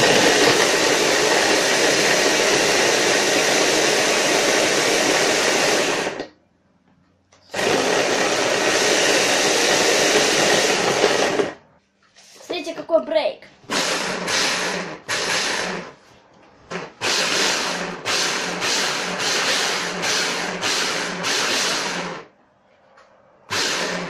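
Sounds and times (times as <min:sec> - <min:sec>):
blender grinding cake: 0:00.0 - 0:06.3, 0:07.5 - 0:11.6, 0:13.7 - 0:16.0, 0:16.7 - 0:22.3, 0:23.5 - 0:24.0.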